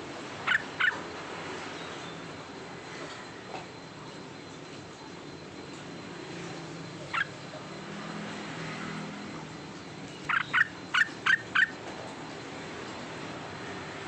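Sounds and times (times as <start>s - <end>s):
bird calling: 0.4s - 1.1s, 7.0s - 7.5s, 10.1s - 11.8s.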